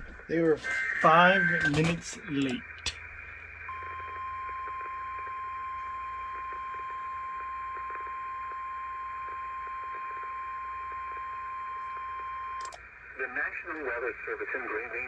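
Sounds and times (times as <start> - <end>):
steady alarm tone: 0.0 - 12.8
radio receiver hiss: 0.3 - 3.7.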